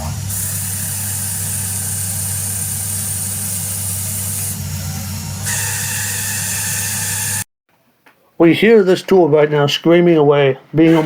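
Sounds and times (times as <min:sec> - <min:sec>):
lathe running and cutting: 0:00.0 - 0:07.4.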